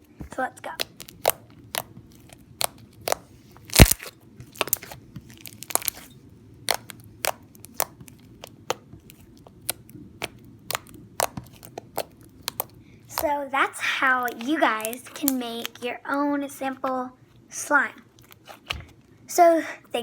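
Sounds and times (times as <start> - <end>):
slime clicks and pops: 2.6 - 4.8.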